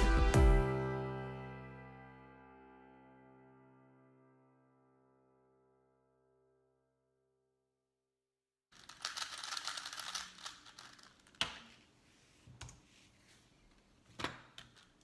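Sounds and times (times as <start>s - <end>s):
puzzle cube clicking turns: 8.8s - 11.7s.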